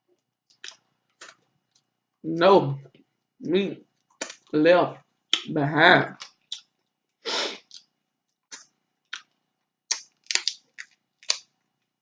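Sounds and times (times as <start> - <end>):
crab shells cracking: 8.5 - 11.5.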